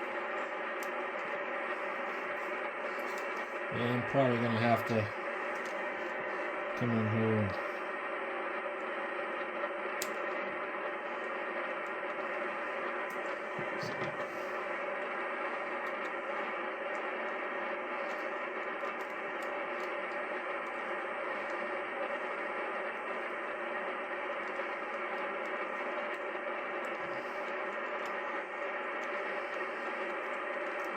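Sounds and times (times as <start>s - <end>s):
radio receiver hissing: 8.9s - 30.9s.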